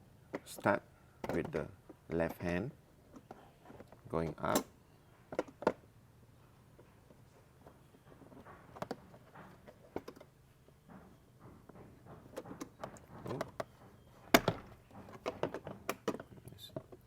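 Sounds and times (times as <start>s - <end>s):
plastic trim clicks and knocks: 12.2s - 17.0s.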